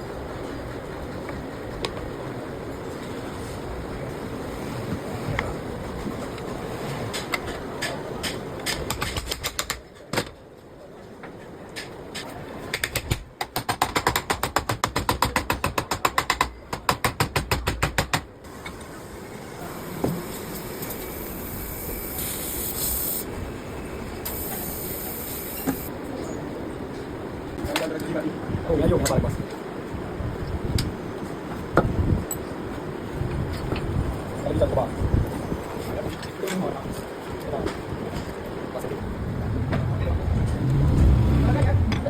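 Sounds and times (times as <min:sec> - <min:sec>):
high hiss: 0:18.5 - 0:25.9.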